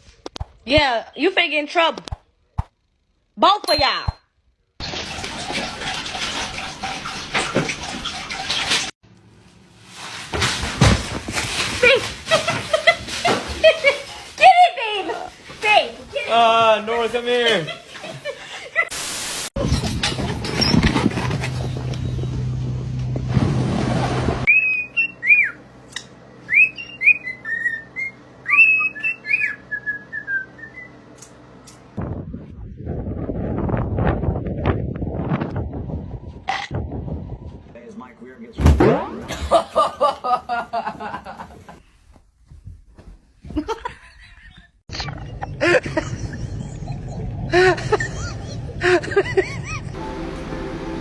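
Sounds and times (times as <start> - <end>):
water running: 4.8 - 9.0.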